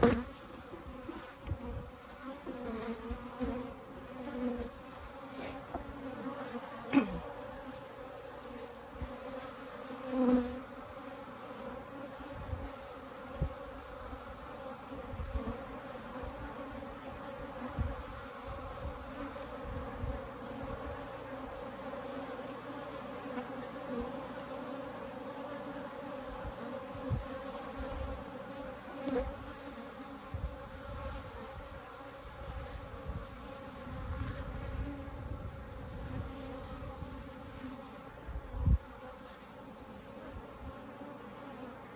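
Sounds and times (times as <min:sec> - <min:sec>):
bees buzzing: 0:00.0 - 0:41.9.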